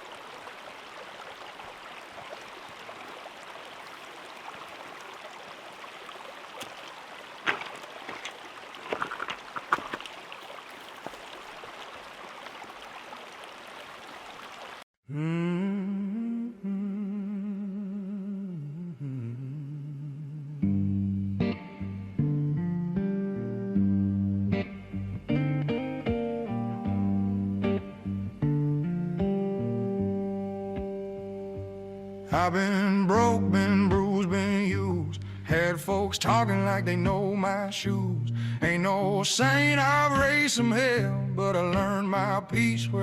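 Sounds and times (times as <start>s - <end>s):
stream rushing: 0.0s - 14.8s
low voice humming a melody: 15.0s - 21.4s.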